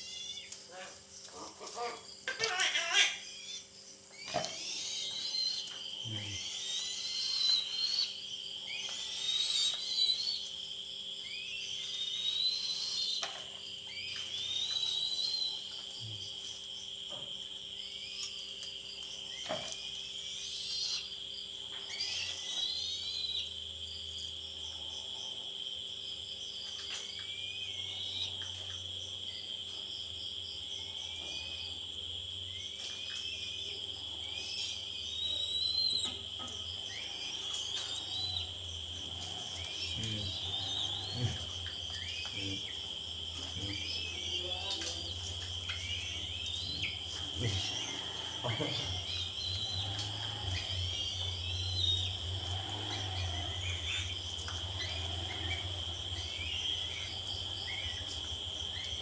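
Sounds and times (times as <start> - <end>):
insect high trill: 0.0 - 59.0
rising whistled bird calls: 3.1 - 10.6, 11.2 - 16.2, 21.9 - 23.6, 32.5 - 38.7, 39.3 - 54.2.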